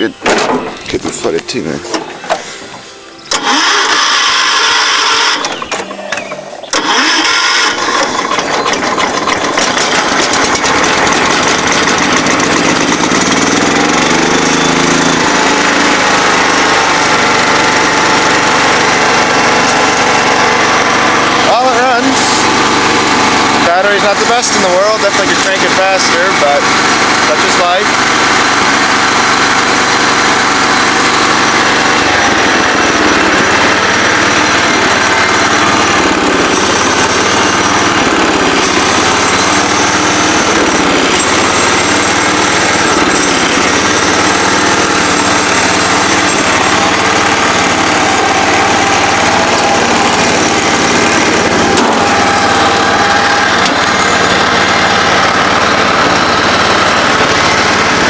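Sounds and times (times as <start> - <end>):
lawn mower engine running: 0.0 - 58.0.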